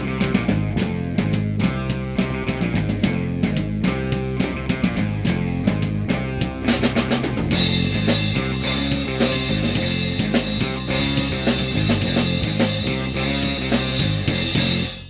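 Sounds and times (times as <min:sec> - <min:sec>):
guitar playing: 0:00.0 - 0:14.7
drum kit: 0:00.0 - 0:15.0
cymbals: 0:07.5 - 0:15.0.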